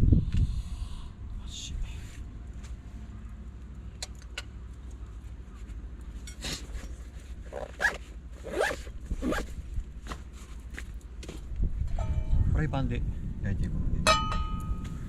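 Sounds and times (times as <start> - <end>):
wind on microphone: 0.0 - 2.2, 11.4 - 15.0
zipper-like scrapes: 7.4 - 9.6.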